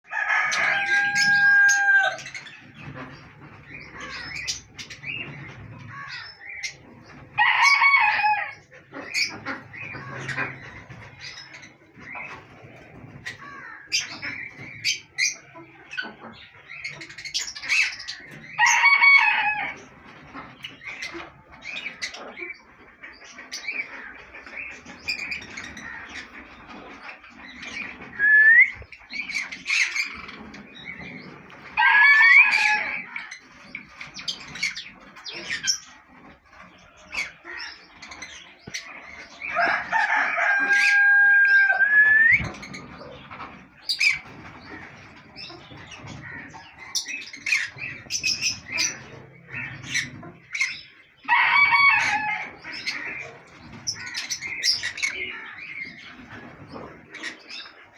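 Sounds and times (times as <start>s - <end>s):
rooster crowing: 0.1s - 2.3s, 7.4s - 8.6s, 18.6s - 19.8s, 31.8s - 33.0s, 39.5s - 42.4s, 51.3s - 52.6s
parrots calling shrilly: 0.1s - 2.4s, 39.5s - 42.8s.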